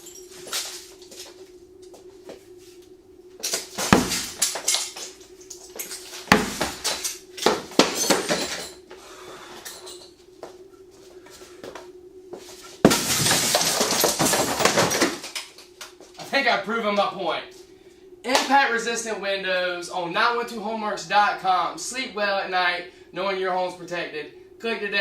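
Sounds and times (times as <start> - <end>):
low hum: 0.0 - 25.0
glass being struck: 3.8 - 4.9.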